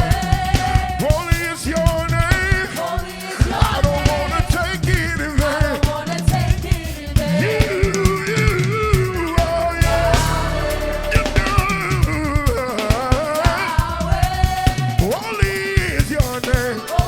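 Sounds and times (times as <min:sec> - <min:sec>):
band playing gospel music: 0:00.0 - 0:17.0
drum kit beat: 0:00.0 - 0:17.0
person singing: 0:09.4 - 0:13.9.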